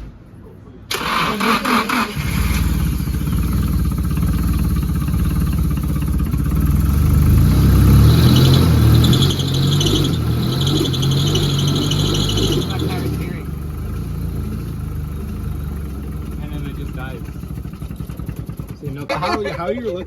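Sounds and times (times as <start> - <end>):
car engine idling: 0.9 - 20.0
pulsing high squeal: 8.2 - 13.2.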